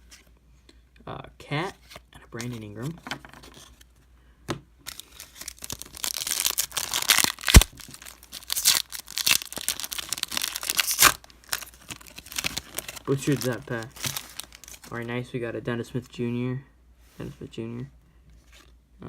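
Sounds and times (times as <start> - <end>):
wrapper tearing and crinkling: 4.9 - 15.1.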